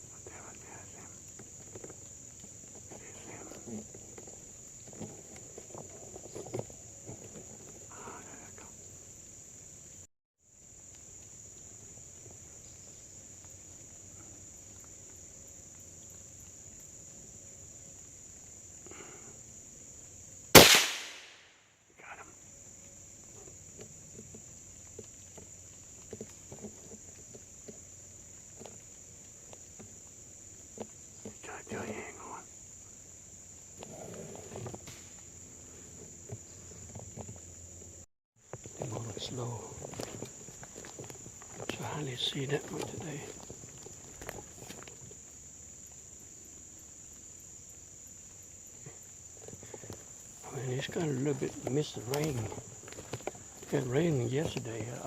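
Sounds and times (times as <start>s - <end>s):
crickets and insects droning: 0.0s - 55.0s
loud gunshot: 20.6s - 21.5s
light rustles: 48.7s - 55.0s.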